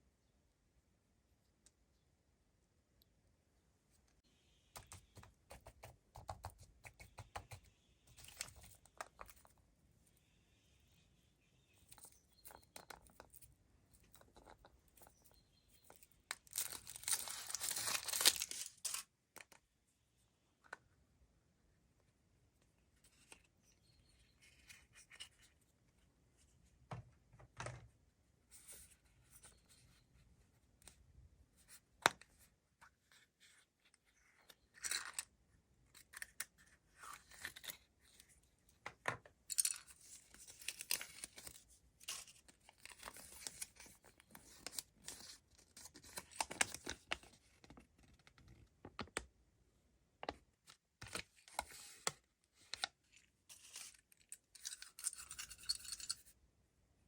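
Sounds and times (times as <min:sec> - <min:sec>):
foil wrappers crinkling and tearing: 0:16.4 - 0:19.1.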